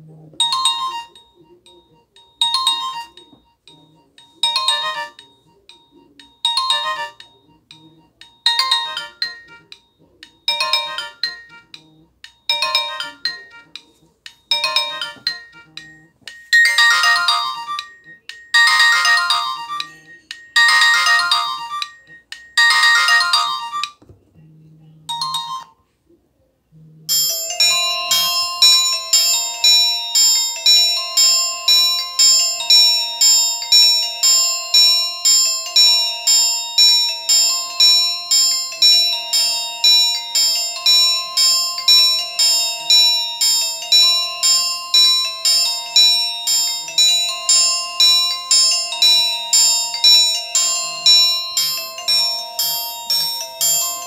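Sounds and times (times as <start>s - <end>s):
tinny mobile phone ringtone: 0.0s - 24.0s, 25.0s - 25.8s, 27.1s - 54.0s
quick ringtone notes: 0.4s - 24.0s, 25.1s - 25.8s, 27.1s - 54.0s.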